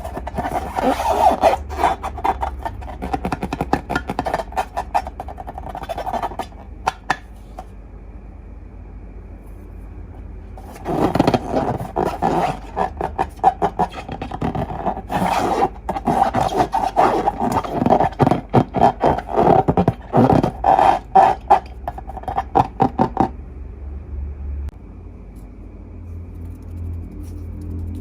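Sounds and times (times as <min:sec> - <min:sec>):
slime balloons squeaking and squelching: 0:00.0 - 0:07.2, 0:10.6 - 0:23.3
low steady hum: 0:00.0 - 0:28.0.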